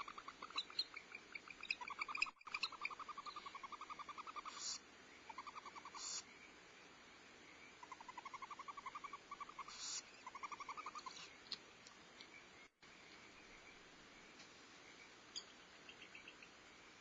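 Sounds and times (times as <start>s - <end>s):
owl hisses: 1.8s - 6.3s, 7.8s - 11.4s.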